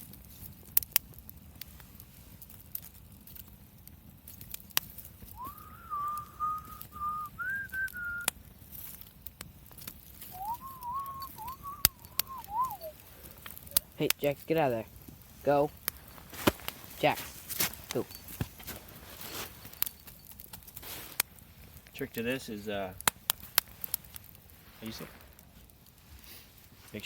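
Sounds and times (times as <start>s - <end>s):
campfire crackling: 0.0s - 27.0s
high wavering tone: 10.4s - 13.0s.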